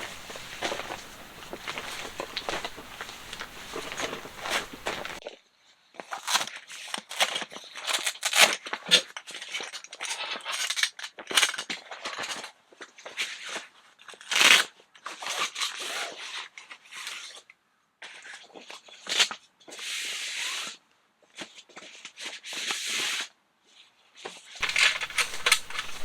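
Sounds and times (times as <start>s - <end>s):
crunching and rustling handling: 0.0s - 5.2s, 24.6s - 26.0s.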